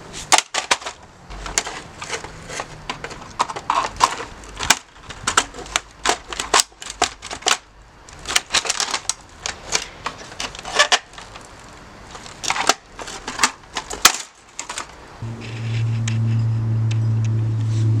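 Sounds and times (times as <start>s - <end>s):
coffee machine being smashed: 0.3s - 1.7s, 12.4s - 14.9s
steady low hum: 15.2s - 18.0s.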